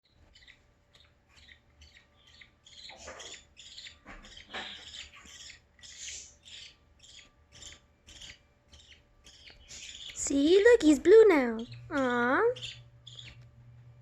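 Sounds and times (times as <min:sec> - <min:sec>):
baby budgerigars squawking: 0:00.0 - 0:13.4.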